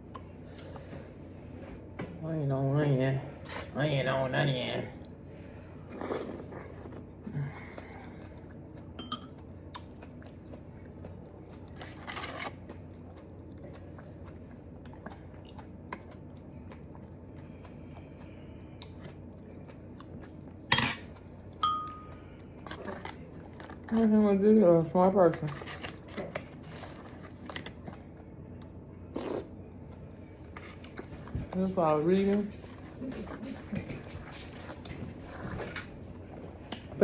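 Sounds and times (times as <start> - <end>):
person chewing food: 5.9 - 24.0, 25.5 - 31.6.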